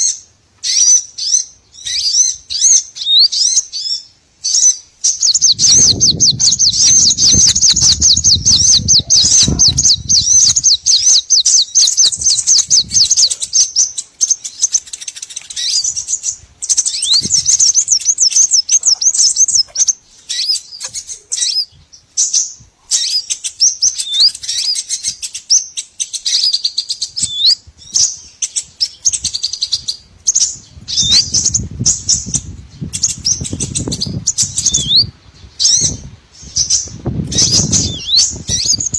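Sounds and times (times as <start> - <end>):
small songbirds chirping and trilling: 0.0 - 38.9.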